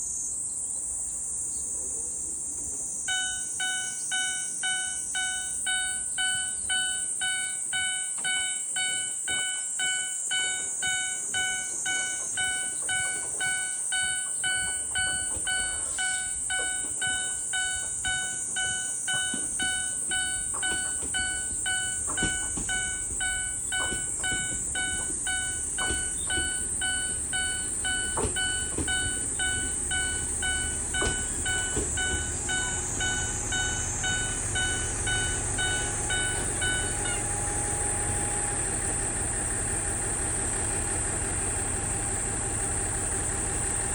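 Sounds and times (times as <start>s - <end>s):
diesel railcar rumble: 0.8s - 43.9s
level crossing warning bell: 3.1s - 38.2s.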